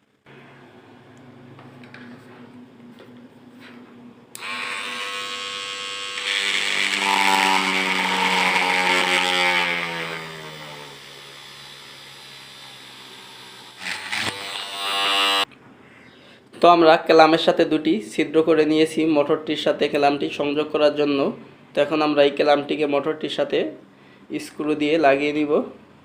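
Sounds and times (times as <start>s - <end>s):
electric drill whining: 4.4s - 15.5s.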